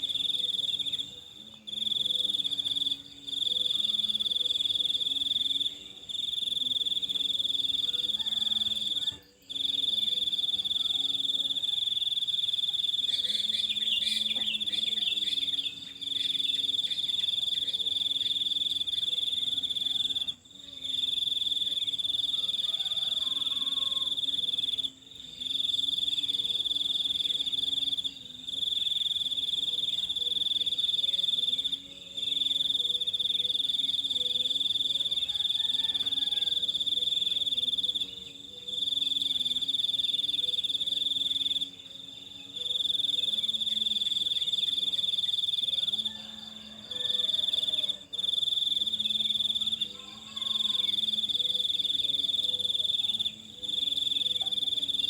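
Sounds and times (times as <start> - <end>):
faint low wavering calls: 0.0 - 55.0
insect trilling: 0.0 - 55.0.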